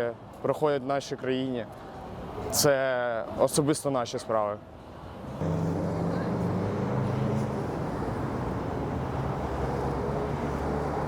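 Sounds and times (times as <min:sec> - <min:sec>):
low traffic rumble: 0:04.6 - 0:11.0.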